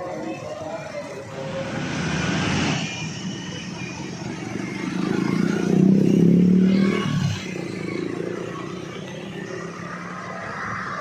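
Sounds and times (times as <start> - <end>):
traffic rumble: 0.0 - 11.0.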